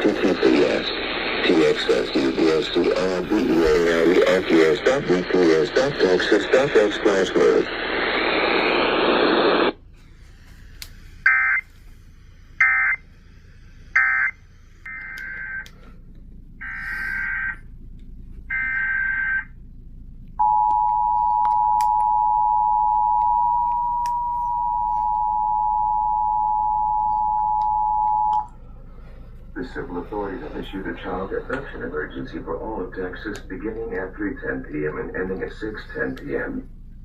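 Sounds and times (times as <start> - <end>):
noise burst: 0.0 - 15.6, 28.6 - 36.8
two-tone attention signal: 20.4 - 28.5.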